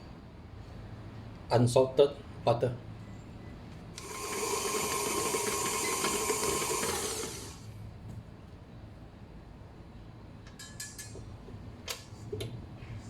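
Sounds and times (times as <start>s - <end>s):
kitchen mixer motor whirring: 4.0s - 7.6s.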